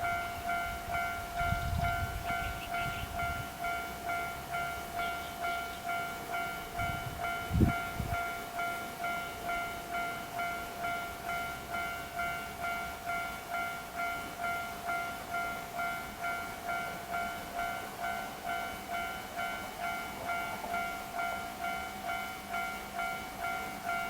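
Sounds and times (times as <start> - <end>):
level crossing warning bell: 0.0 - 24.0.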